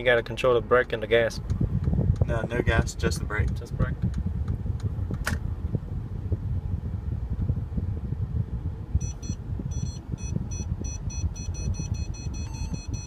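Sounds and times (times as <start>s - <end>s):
low steady car rumble: 0.0s - 13.0s
parking sensor warning beeps: 9.0s - 13.0s.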